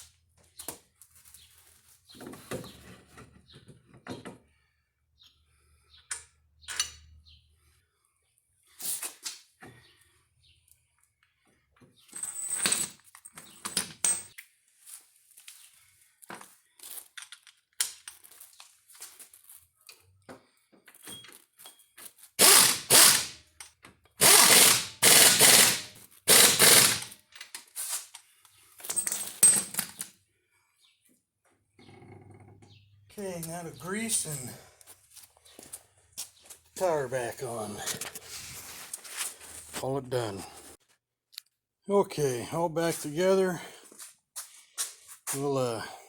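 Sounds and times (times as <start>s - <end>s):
metal tools clinking: 12.1s - 14.4s, 28.8s - 30.1s
power tool bursts: 22.4s - 23.4s, 24.2s - 27.2s.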